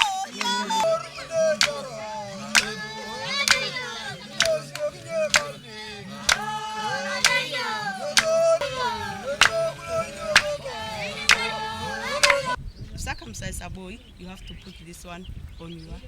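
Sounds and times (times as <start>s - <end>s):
group singing a chant: 0.0s - 12.6s
hand claps keeping beat: 0.0s - 12.6s.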